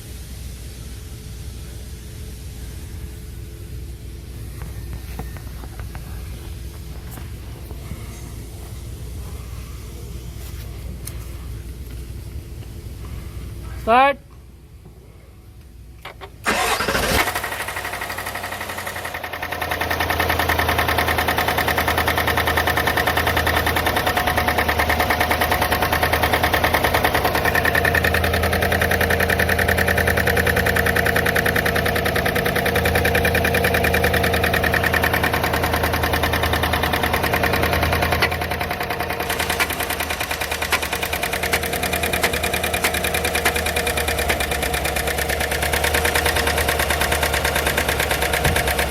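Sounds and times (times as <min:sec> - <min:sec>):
engine cranking and idling: 0:04.2 - 0:13.4, 0:15.6 - 0:48.9.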